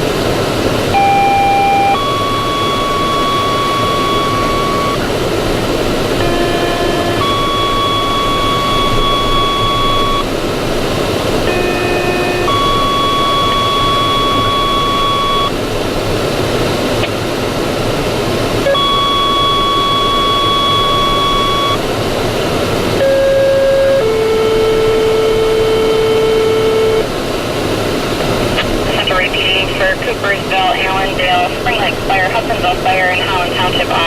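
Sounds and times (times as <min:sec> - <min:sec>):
two-tone pager tones: 0:00.9 - 0:05.1, 0:06.2 - 0:10.3, 0:11.5 - 0:15.6, 0:18.7 - 0:21.8, 0:23.0 - 0:27.0
radio static hiss: 0:28.2 - 0:34.0.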